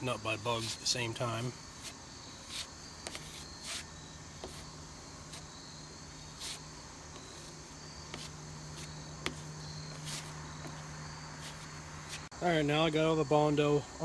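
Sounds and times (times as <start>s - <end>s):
crickets chirring: 0.0s - 14.0s
filler scraping strokes: 0.5s - 12.3s.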